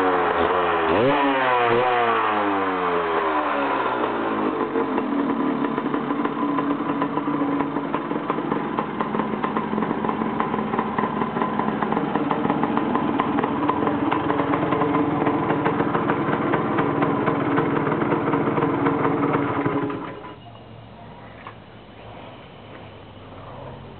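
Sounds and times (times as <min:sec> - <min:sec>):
engine running with rattle: 0:00.0 - 0:23.9
faint background noise: 0:20.1 - 0:23.9.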